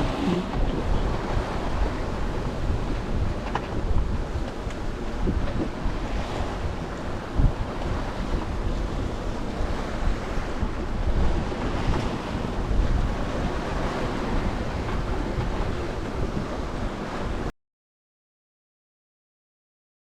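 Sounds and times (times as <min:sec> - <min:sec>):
waves rushing along hull: 0:00.0 - 0:17.5
wind buffeting microphone: 0:00.0 - 0:17.5.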